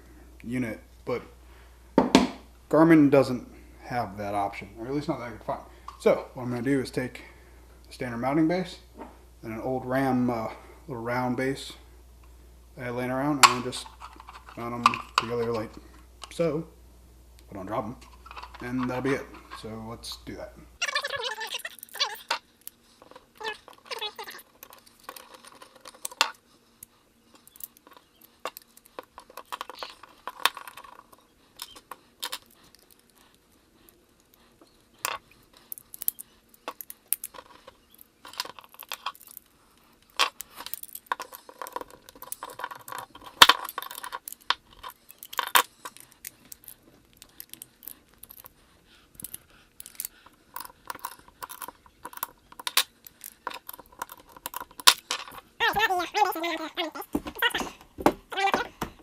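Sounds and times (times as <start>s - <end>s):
small parts clicking and clattering: 13.4s - 16.5s, 18.0s - 19.8s, 20.8s - 59.0s.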